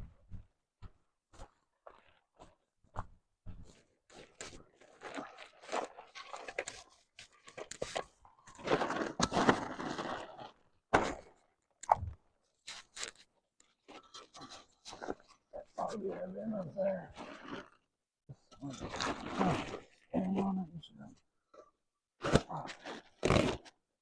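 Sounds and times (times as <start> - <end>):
footsteps: 0.0 - 4.3
crunches scrapes and knocks: 3.0 - 15.8, 17.1 - 20.1.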